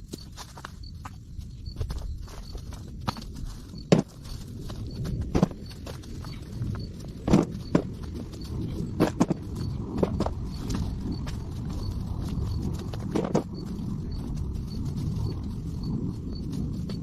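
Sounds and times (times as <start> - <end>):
low background rumble: 0.0 - 17.0
irregular knocks and thuds: 1.7 - 11.6, 12.4 - 13.7.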